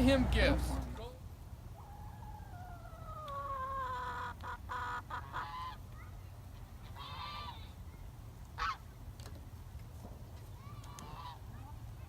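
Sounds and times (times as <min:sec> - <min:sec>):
honking goose-like animal calls: 0:03.0 - 0:05.8, 0:06.8 - 0:07.8, 0:08.6 - 0:08.8, 0:10.7 - 0:11.5.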